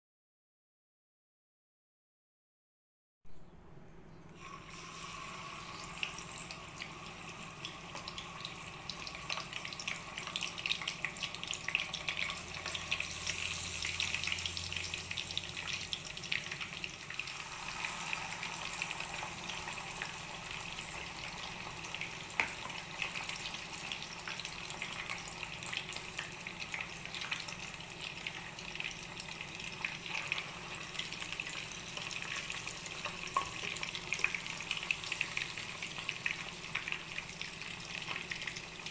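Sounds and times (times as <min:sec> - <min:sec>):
food sizzling in hot oil: 0:04.4 - 0:38.9.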